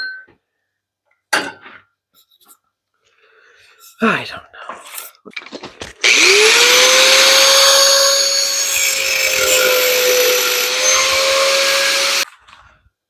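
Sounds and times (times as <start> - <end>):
power tool grinding steel pipe: 6.0 - 12.3.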